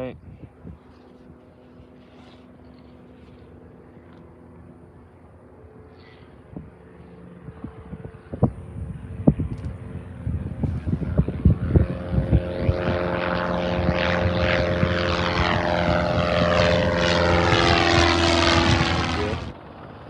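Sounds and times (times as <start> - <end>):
propeller airplane engine drone: 0.0 - 20.0
wind thumps on microphone: 7.5 - 16.6.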